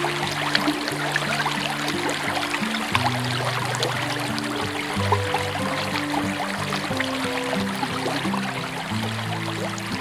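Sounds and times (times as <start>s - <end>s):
music of held low notes: 0.0s - 10.0s
small river babbling: 0.0s - 10.0s.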